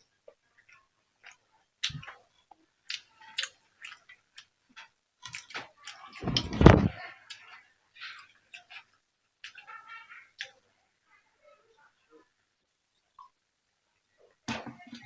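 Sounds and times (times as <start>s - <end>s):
chewing crunchy food: 0.1s - 6.6s, 7.3s - 9.7s.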